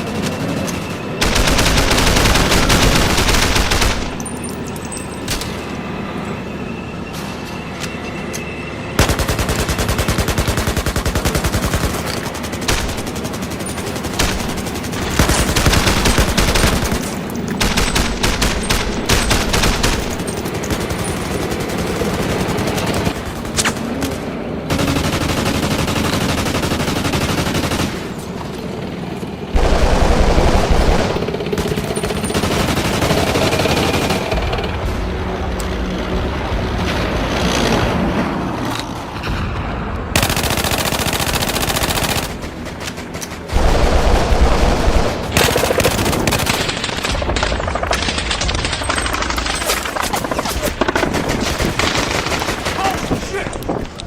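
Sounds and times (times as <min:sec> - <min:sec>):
automatic gunfire bursts: 0:01.2 - 0:04.2.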